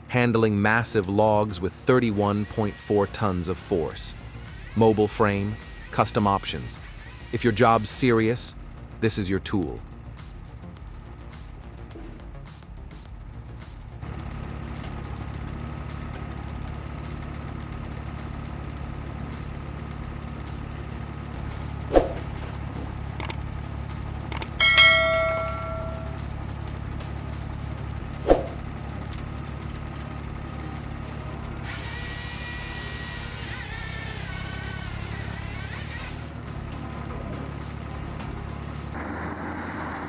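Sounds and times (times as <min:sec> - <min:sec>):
machine engine running: 0:02.0 - 0:09.0, 0:09.7 - 0:40.0
ringing metal clang: 0:24.6 - 0:26.3.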